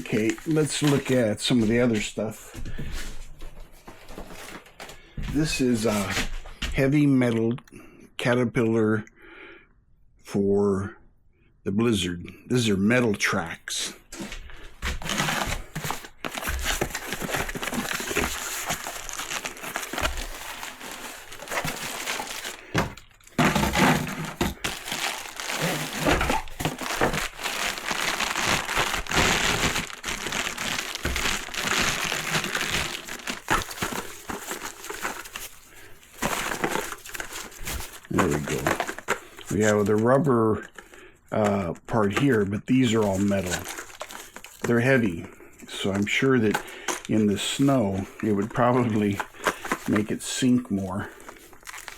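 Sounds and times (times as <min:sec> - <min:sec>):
plastic packaging crinkling: 0:00.0 - 0:02.0, 0:14.1 - 0:40.1, 0:40.7 - 0:51.9.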